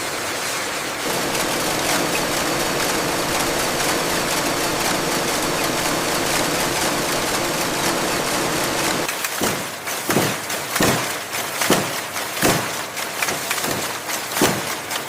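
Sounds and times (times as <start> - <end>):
industrial machinery humming: 1.0 - 9.1
machine sharp repeated strokes: 1.0 - 10.0.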